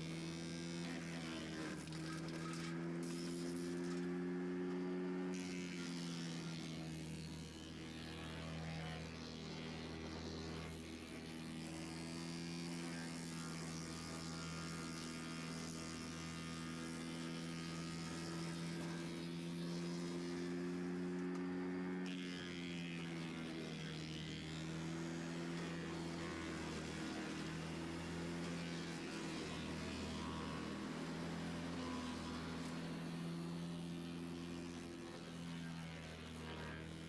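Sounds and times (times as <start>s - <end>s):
wood chipper engine running: 9.0s - 37.0s.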